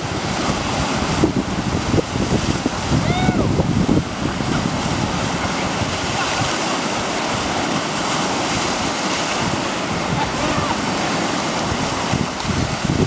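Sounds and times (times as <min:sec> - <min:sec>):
whitewater rushing: 0:00.0 - 0:13.0.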